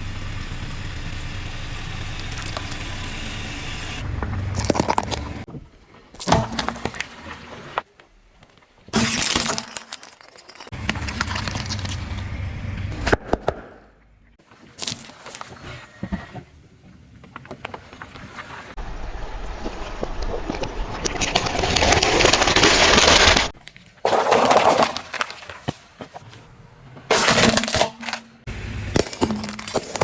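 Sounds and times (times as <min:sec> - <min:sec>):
car tyres crushing crunchy objects: 0:00.0 - 0:05.5, 0:20.5 - 0:30.0.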